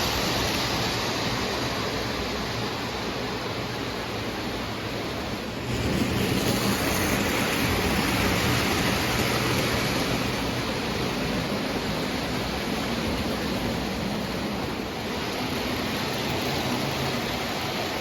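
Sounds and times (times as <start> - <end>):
toy train rolling on track: 5.6 - 18.0.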